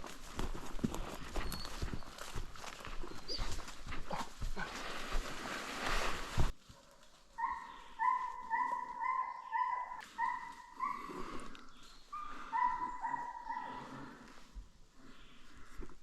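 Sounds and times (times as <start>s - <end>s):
hounds baying: 3.0s - 4.7s, 6.8s - 14.2s.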